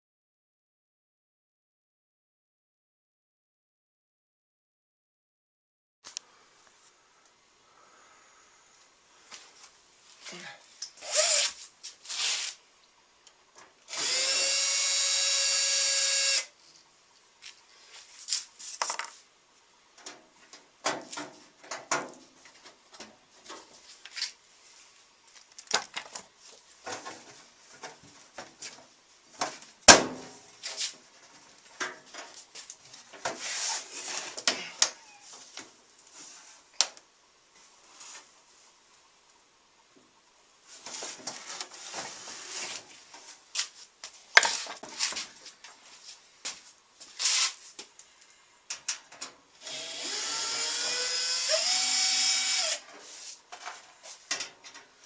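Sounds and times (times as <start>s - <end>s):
power drill whining: 11.0s - 11.5s, 13.9s - 16.5s, 49.6s - 52.8s.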